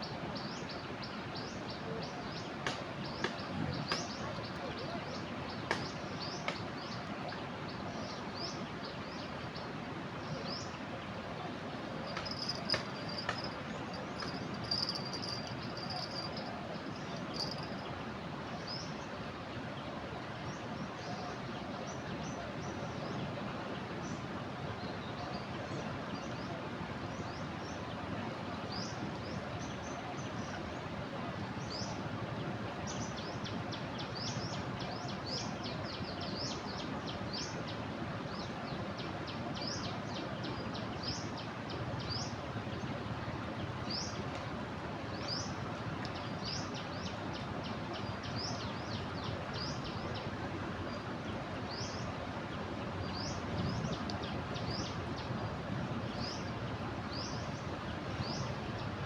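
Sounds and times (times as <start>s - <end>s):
rushing flooded river: 0.1s - 59.0s
small birds chirping: 12.0s - 18.0s.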